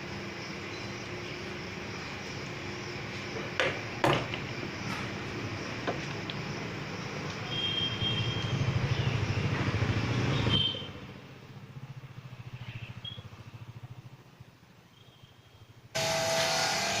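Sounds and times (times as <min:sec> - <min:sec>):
pressure washer pulsing drone: 0:15.9 - 0:17.0.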